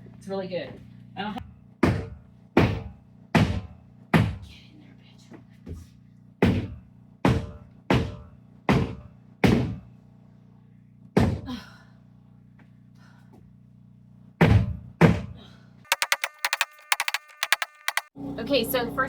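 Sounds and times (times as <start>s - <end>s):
generator humming: 0.0s - 19.0s
heavy thuds: 1.8s - 4.5s, 5.6s - 9.9s, 11.2s - 11.6s, 14.4s - 15.4s.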